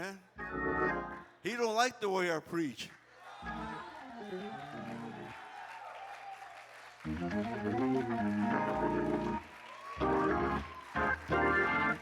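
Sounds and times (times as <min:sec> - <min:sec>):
organ playing chords: 0:00.0 - 0:01.3, 0:03.4 - 0:03.8, 0:04.7 - 0:05.3, 0:07.1 - 0:12.0.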